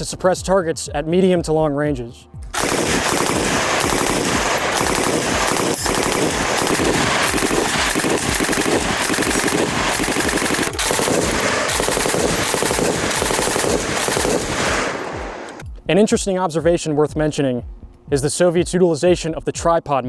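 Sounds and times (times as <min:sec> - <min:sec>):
machine gun firing bursts: 0:02.5 - 0:15.6.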